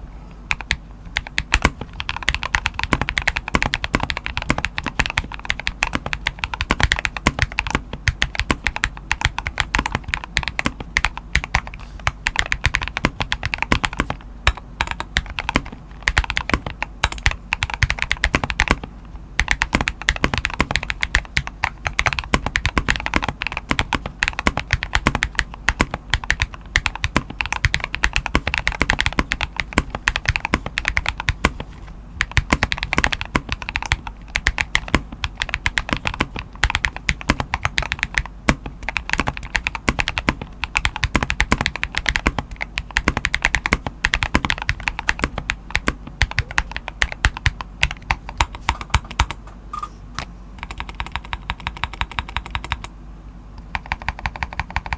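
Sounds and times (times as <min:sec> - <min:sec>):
fast typing on mechanical keyboard: 0:00.5 - 0:49.4, 0:50.6 - 0:52.9, 0:53.7 - 0:54.9.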